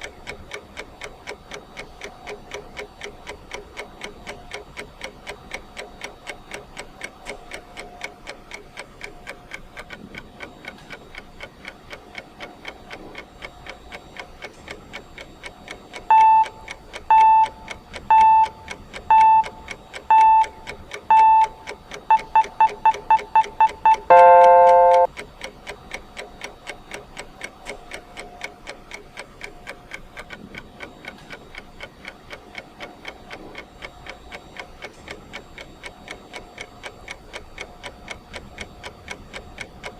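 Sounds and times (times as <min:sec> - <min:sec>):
clock ticking: 0:00.0 - 0:39.9
long low beep: 0:16.1 - 0:25.1
loud electronic beeps: 0:22.1 - 0:25.1.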